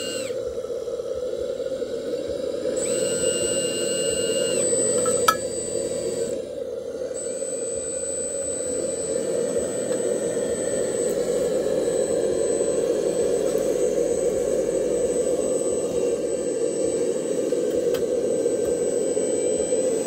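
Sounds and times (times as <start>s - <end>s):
toy truck motor hum: 0.0s - 0.5s, 2.7s - 9.3s
thin high whine: 0.0s - 20.0s.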